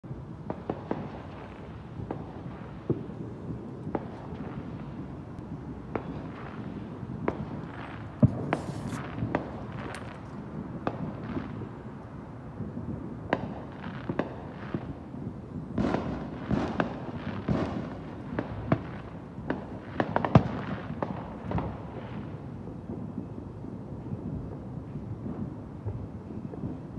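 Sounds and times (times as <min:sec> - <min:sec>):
fireworks bangs: 0:00.5 - 0:12.0.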